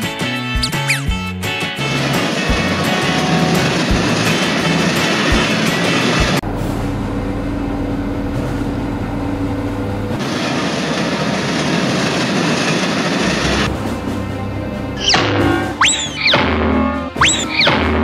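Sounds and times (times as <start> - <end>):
toy train running on track: 1.8 - 6.4.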